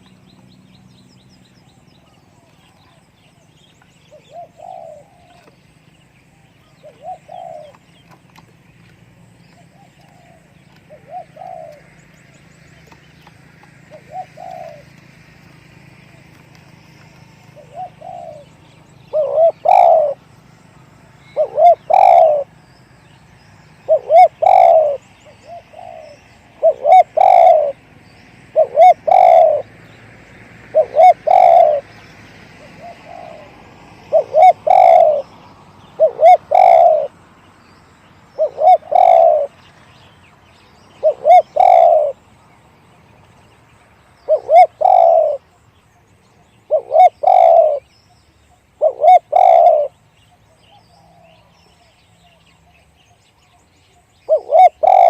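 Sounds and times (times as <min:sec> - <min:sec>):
small birds chirping: 0:00.0 - 0:55.0
dove cooing: 0:04.1 - 0:05.6, 0:06.3 - 0:08.3, 0:09.6 - 0:12.0, 0:12.8 - 0:15.1, 0:15.8 - 0:20.3, 0:21.1 - 0:22.6, 0:23.8 - 0:29.8, 0:30.6 - 0:37.2, 0:38.3 - 0:39.6, 0:40.9 - 0:42.2, 0:44.2 - 0:45.5, 0:46.4 - 0:47.9, 0:48.7 - 0:52.8, 0:54.2 - 0:55.0.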